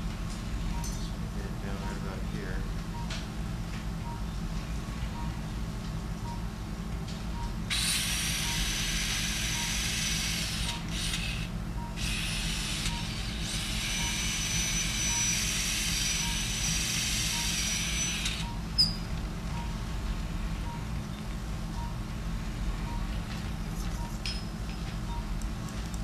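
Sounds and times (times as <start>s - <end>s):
surgical drill whining: 7.7s - 19.0s.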